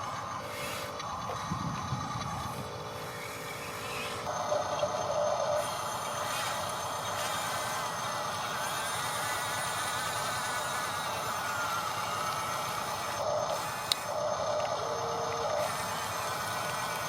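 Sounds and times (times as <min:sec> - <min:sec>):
electric gear motors whining: 0:00.0 - 0:17.0.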